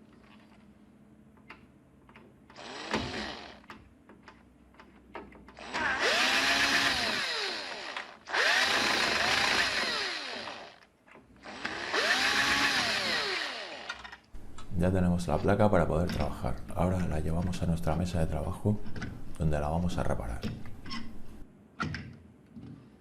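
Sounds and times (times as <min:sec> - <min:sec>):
electric screwdriver running: 0:02.6 - 0:03.6, 0:05.6 - 0:10.8, 0:11.4 - 0:14.2.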